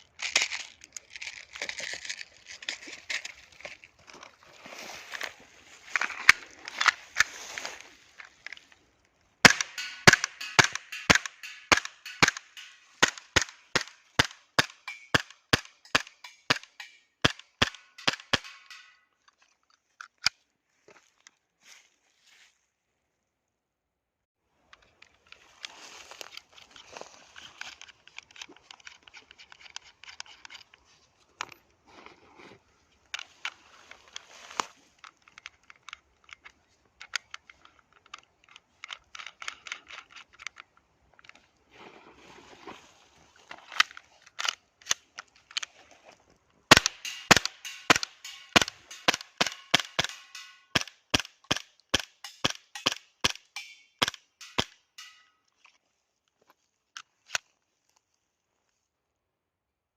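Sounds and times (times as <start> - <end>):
clicks and rattles: 0.0 - 4.4, 9.4 - 20.3, 35.0 - 41.4, 46.7 - 55.3
airsoft pistol shots: 9.4 - 13.9, 46.7 - 50.9.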